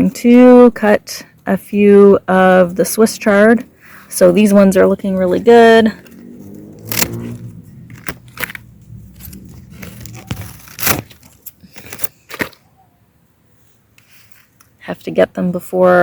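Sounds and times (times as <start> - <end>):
leaves rustling: 3.6 - 12.7
stalks snapping: 6.1 - 12.6.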